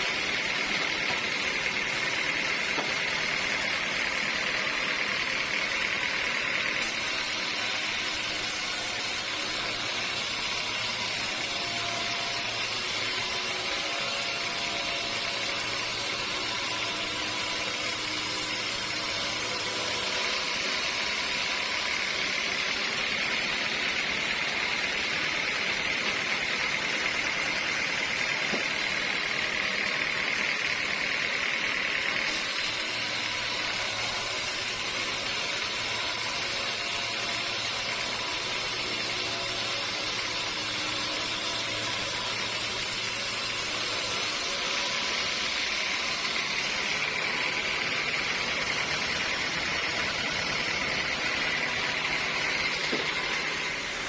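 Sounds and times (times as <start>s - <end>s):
sawmill saw cutting logs: 0.0s - 54.0s.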